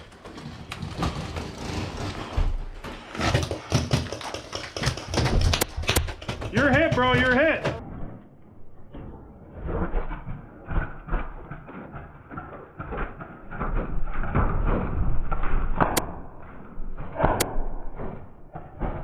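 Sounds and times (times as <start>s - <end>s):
thumps and knocks: 0.0s - 7.9s
sharp cracks: 12.3s - 16.4s, 17.0s - 17.7s.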